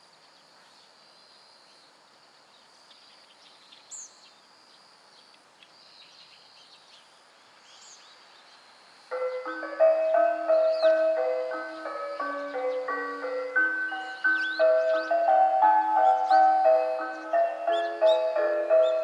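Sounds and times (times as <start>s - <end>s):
bird chirps: 7.7s - 19.0s.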